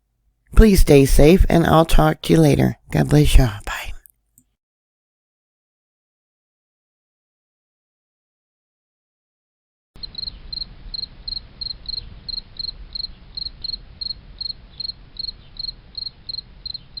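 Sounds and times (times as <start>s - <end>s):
faint low rumble: 10.0s - 17.0s
insect chirping: 10.0s - 17.0s.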